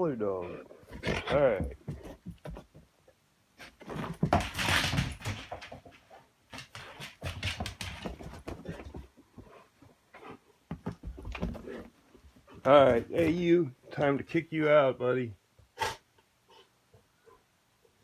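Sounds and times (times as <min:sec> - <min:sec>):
dog growling in play: 0:00.5 - 0:01.5.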